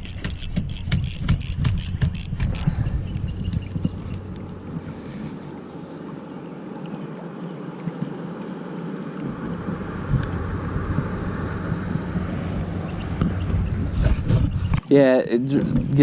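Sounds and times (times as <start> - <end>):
flowing river water: 0.0 - 16.0
wind rumbling on microphone: 0.0 - 16.0.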